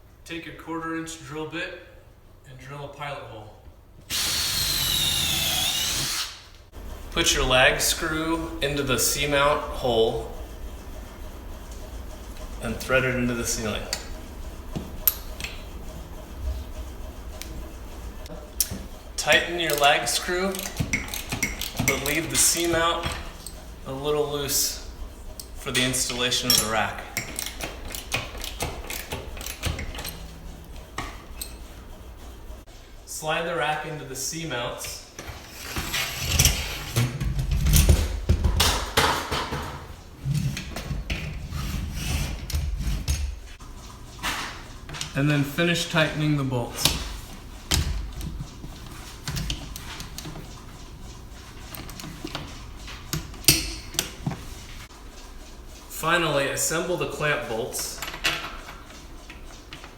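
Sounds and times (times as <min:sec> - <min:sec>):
wrench metal clicks and knocks: 0:20.5 - 0:23.6, 0:26.5 - 0:30.3.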